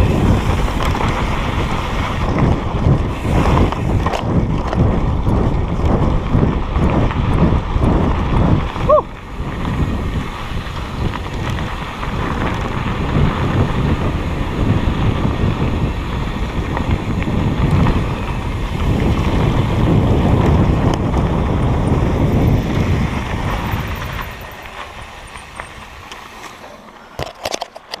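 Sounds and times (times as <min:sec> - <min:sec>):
wind buffeting microphone: 0:00.0 - 0:28.0.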